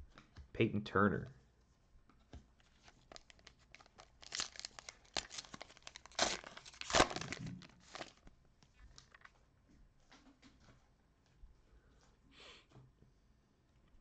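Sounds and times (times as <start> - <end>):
foil wrapper tearing and crinkling: 2.8 - 8.2.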